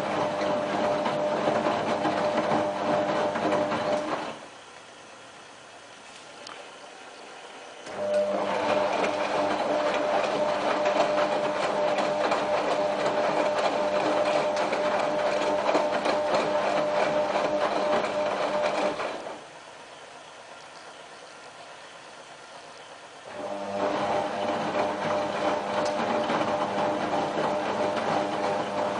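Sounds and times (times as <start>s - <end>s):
washing machine drum rattle: 0.0s - 4.4s, 7.9s - 19.4s, 23.4s - 28.9s
washing machine motor whine: 0.0s - 28.9s.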